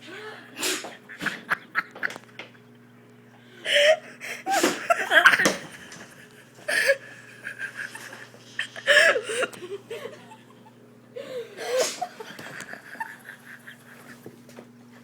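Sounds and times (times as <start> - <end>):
people laughing: 3.8 - 10.8, 11.4 - 14.3.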